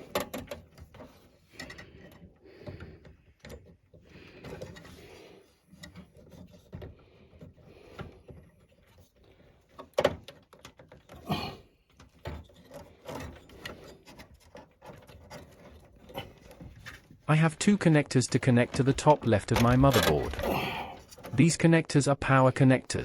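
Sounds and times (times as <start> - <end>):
cables rubbing and scraping: 12.1 - 21.7.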